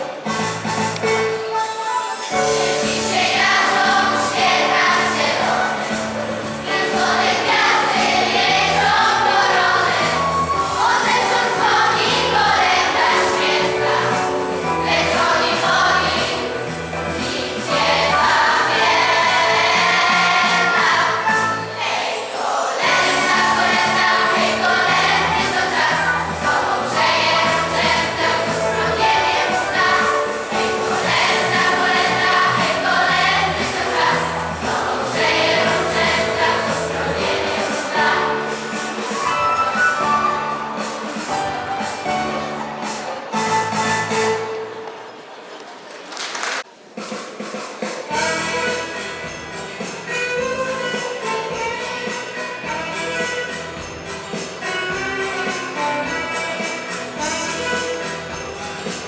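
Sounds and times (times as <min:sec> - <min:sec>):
instrumental accompaniment: 0:00.0 - 0:45.5, 0:46.7 - 0:59.0
choir singing a carol: 0:01.9 - 0:43.0.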